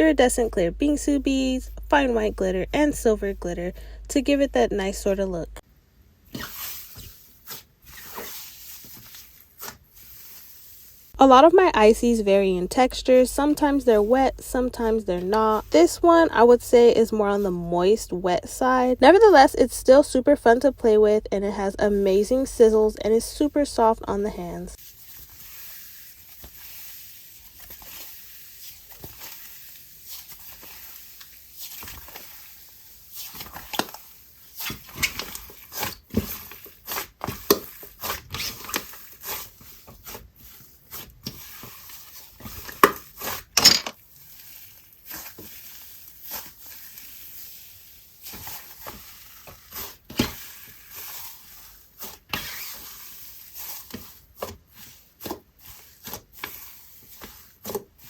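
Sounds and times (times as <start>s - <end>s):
slime crackling and squishing: 6.2s - 11.8s, 24.8s - 58.0s.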